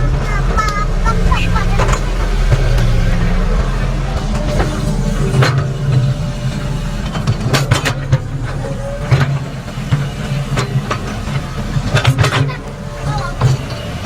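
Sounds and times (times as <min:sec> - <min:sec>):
excavator diesel engine rumbling: 0:00.0 - 0:14.0.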